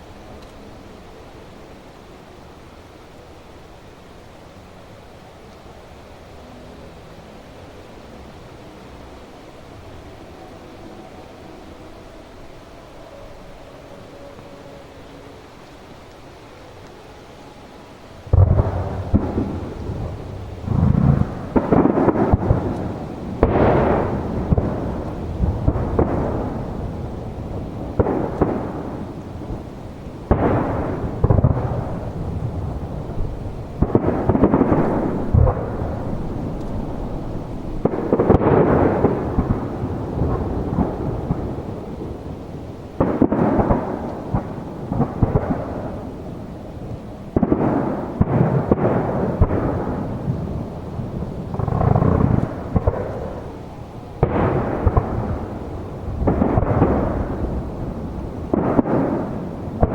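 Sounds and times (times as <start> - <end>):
fireworks shells booming: 18.2 - 59.9.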